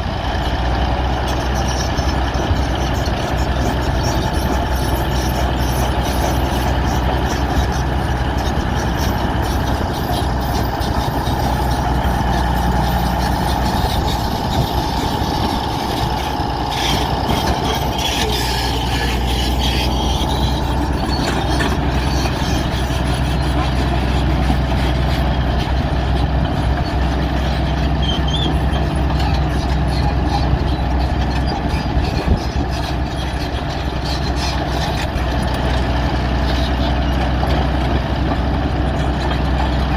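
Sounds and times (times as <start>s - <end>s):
diesel engine running: 0.0s - 39.9s
high squeal: 8.8s - 24.4s, 27.9s - 34.6s.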